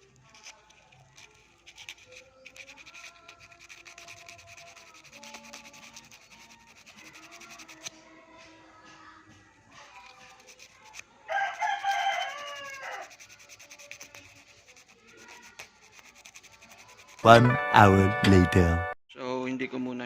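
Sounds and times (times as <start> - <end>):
sandpaper scraping metal terminals: 0.0 - 7.9, 9.9 - 17.3.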